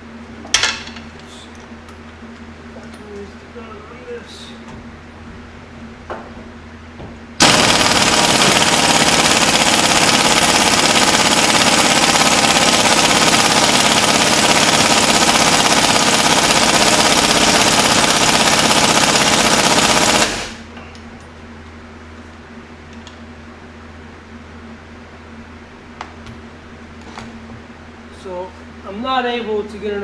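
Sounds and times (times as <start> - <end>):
impact wrench hammering: 7.4 - 20.6.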